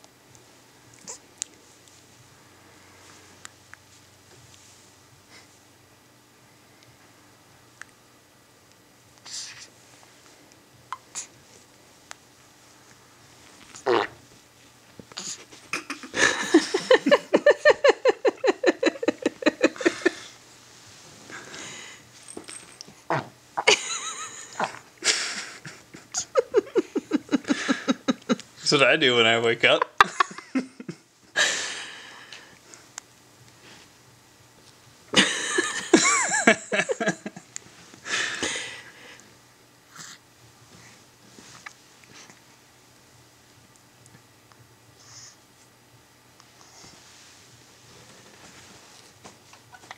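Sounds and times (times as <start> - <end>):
baby grunting and straining: 13.8 - 14.2.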